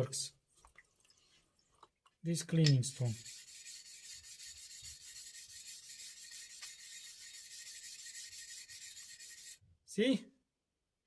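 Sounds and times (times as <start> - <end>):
stone rubbing on wet whetstone: 2.6 - 9.6.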